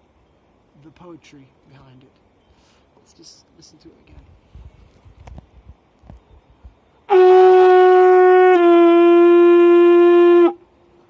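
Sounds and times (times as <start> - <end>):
horn long high note: 7.1 - 10.6.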